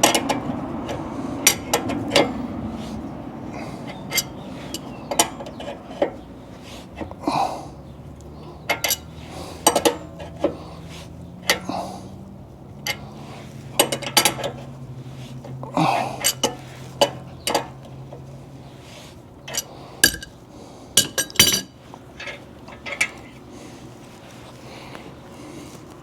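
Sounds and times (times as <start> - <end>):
metal tools clinking on steel: 3.9 - 6.3, 8.2 - 10.6, 12.8 - 14.7, 16.2 - 18.2, 19.4 - 20.4, 21.0 - 23.4.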